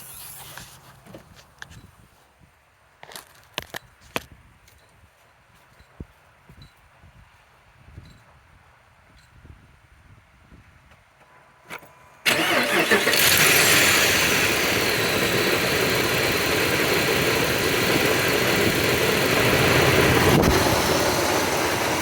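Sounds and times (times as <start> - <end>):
v eight engine starting and idling: 0.0 - 1.0, 12.2 - 22.0.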